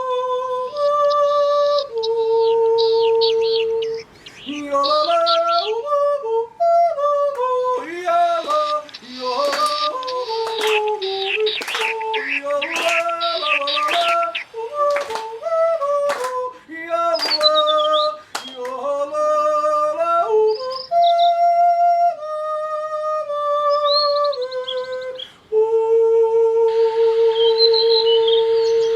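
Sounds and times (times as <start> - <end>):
high bird chirps: 0.9 - 5.8, 7.8 - 15.4, 17.1 - 18.8.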